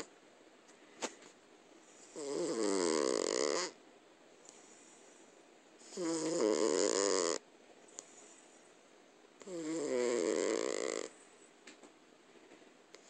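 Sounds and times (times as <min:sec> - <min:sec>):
cat snoring: 0:02.0 - 0:03.8, 0:05.8 - 0:07.4, 0:09.4 - 0:11.2.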